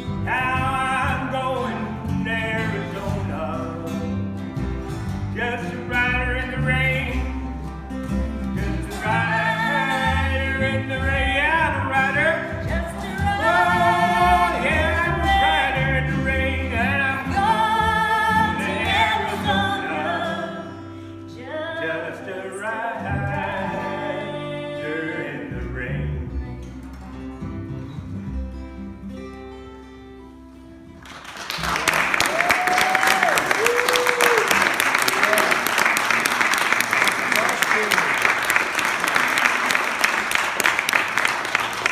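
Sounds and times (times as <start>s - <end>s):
acoustic guitar: 0.0s - 41.9s
person singing: 8.7s - 26.3s.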